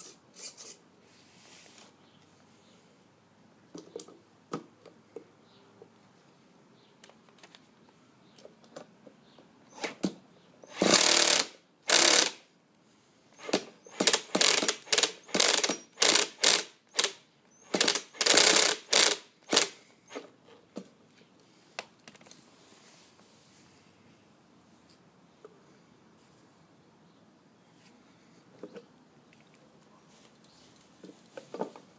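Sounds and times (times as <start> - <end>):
small engine cranked by starter: 10.6 - 12.4, 13.4 - 20.2.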